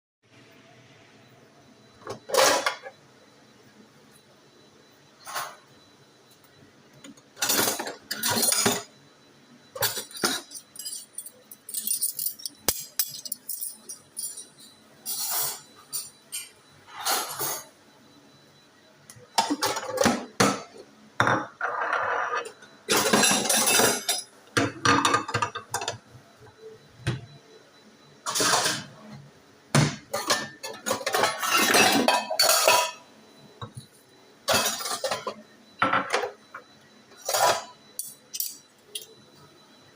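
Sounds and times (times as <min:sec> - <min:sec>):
clinks and clatters: 0:09.8 - 0:17.4, 0:37.2 - 0:39.2.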